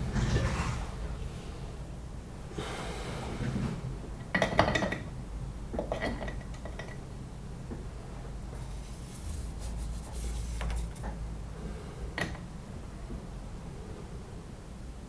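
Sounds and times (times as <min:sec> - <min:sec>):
soft rasping strokes: 0:08.6 - 0:11.0.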